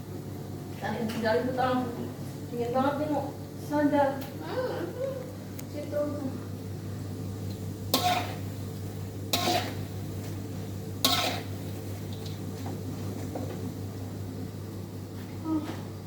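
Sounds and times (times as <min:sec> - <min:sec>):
steady low hum: 0:00.0 - 0:16.0
metal utensil clanking on pan: 0:08.0 - 0:08.4.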